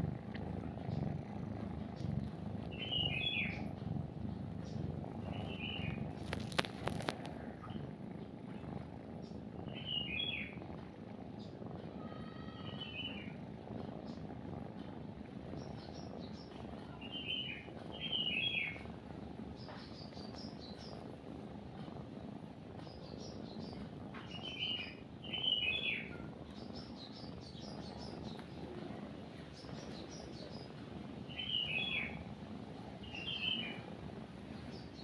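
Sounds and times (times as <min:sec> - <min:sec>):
cat purring: 0:00.0 - 0:35.0
bird chirping: 0:00.7 - 0:07.8, 0:09.2 - 0:10.6, 0:12.3 - 0:13.4, 0:15.6 - 0:18.8, 0:22.9 - 0:28.5, 0:31.3 - 0:32.2, 0:33.0 - 0:33.8
faint high chirps: 0:02.7 - 0:03.6.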